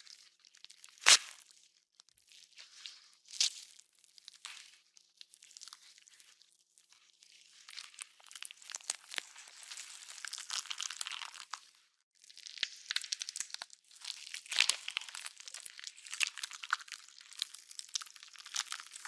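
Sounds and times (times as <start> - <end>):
wet flesh tearing: 0.6 - 1.5.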